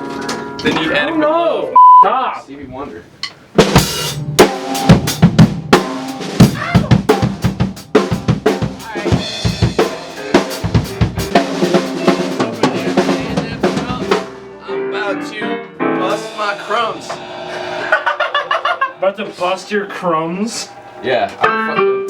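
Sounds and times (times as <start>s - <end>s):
drum kit playing: 3.3s - 22.0s
cymbal wash: 16.0s - 21.6s.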